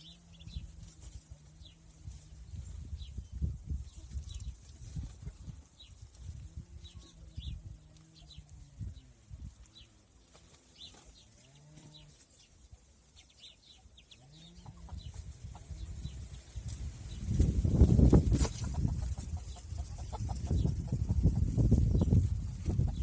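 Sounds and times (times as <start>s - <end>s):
wind rumble on microphone: 0.3s - 9.8s, 14.4s - 23.0s.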